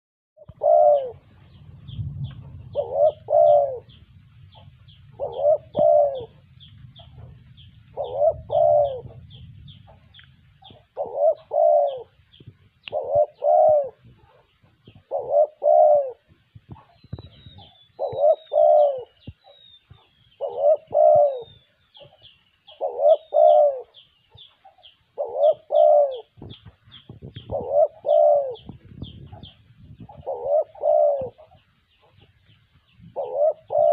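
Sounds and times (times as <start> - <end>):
dove cooing: 0.4 - 33.9
small bird chirping: 0.4 - 33.9
low rumble: 1.2 - 11.0.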